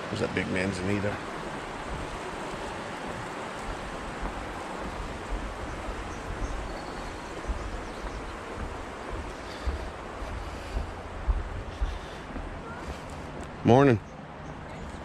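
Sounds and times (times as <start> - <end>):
wind buffeting microphone: 0.0 - 13.7
mountain river rushing: 0.0 - 14.0.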